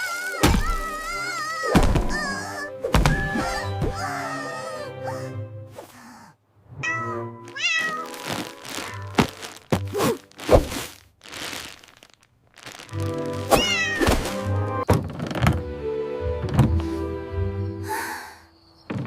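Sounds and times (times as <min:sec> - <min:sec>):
background music: 0:00.0 - 0:05.9, 0:06.6 - 0:10.6, 0:12.8 - 0:18.7
cat meowing: 0:06.8 - 0:09.2, 0:13.5 - 0:14.1
sharp thuds: 0:08.2 - 0:11.9.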